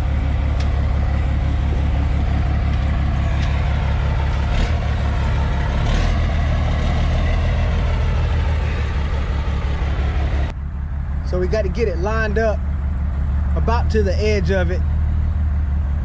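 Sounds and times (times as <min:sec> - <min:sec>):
diesel truck engine rumbling: 0:00.0 - 0:16.0.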